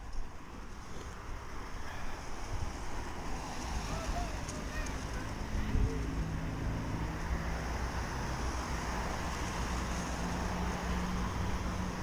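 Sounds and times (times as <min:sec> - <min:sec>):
wind noise on microphone: 0:02.4 - 0:06.3.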